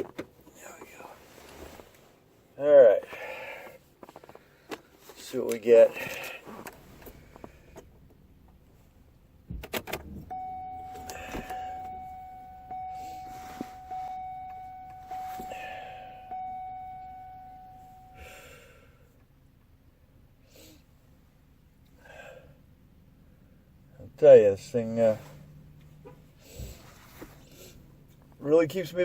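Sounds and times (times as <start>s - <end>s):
car warning chime dinging: 10.3s - 18.6s.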